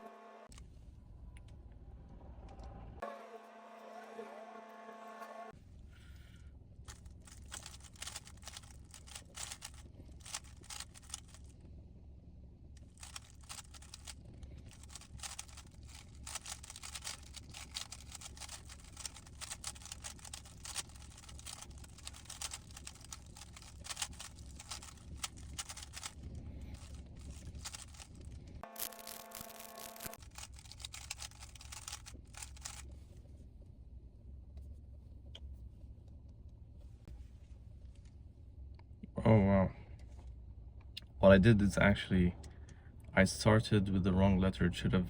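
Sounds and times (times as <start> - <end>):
low steady hum: 0.0 - 45.0
puzzle cube layers clicking: 6.9 - 11.4, 13.0 - 26.2, 26.8 - 32.8.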